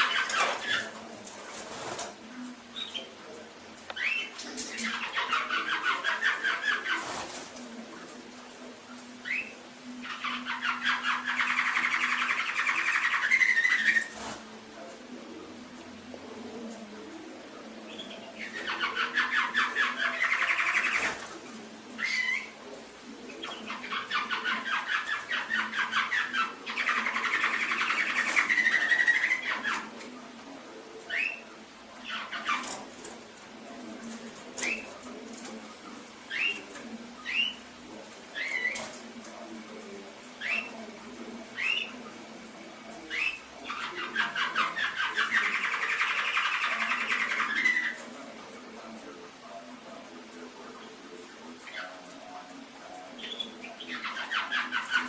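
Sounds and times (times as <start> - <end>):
canary singing trills: 0.0 - 1.0, 2.7 - 3.2, 3.9 - 7.3, 9.1 - 14.4, 17.8 - 21.3, 21.9 - 22.6, 23.2 - 30.0, 31.1 - 32.9, 36.2 - 38.9, 40.4 - 40.8, 41.4 - 42.1, 43.0 - 48.1, 53.1 - 55.0.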